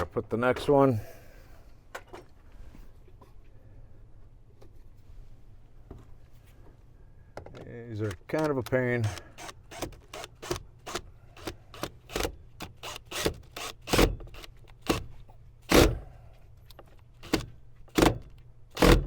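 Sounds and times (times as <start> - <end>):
screws driven into wood: 9.0 - 15.1, 15.7 - 16.0, 17.2 - 19.0.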